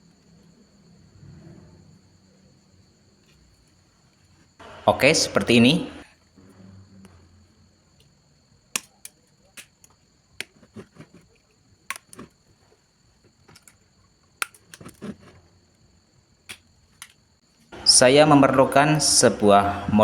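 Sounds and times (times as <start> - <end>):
electronic parts and tools clicking: 8.7 - 12.4, 13.2 - 15.4, 16.4 - 17.4.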